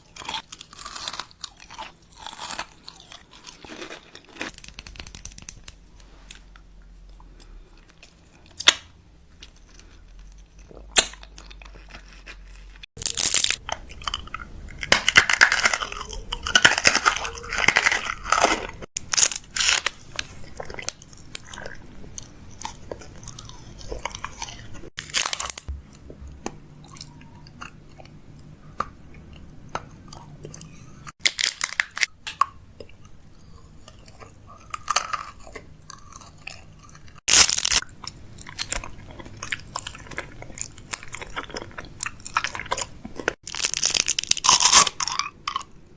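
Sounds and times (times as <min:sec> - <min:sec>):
crunching and chewing: 0:00.0 - 0:45.9.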